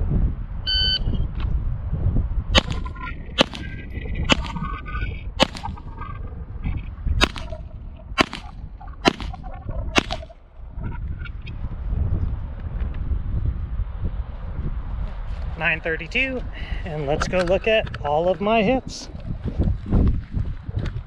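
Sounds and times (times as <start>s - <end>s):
wind rumbling on microphone: 0.0s - 21.0s
pistol shots: 2.6s - 4.7s, 5.4s - 5.8s, 7.2s - 10.4s.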